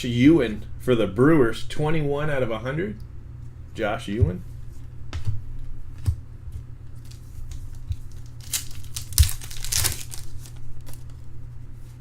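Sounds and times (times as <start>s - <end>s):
card pack wrapper crinkling: 7.0s - 11.2s.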